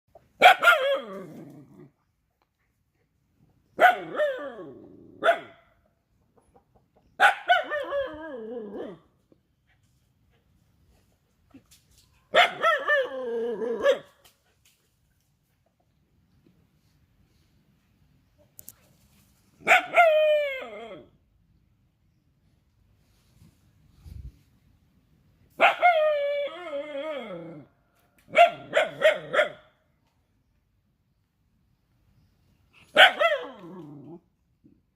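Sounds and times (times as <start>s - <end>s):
dog barking: 0.4s - 1.2s, 3.8s - 5.8s, 7.2s - 8.0s, 12.3s - 14.2s, 19.6s - 20.2s, 25.6s - 26.1s, 28.3s - 29.8s, 32.9s - 33.8s.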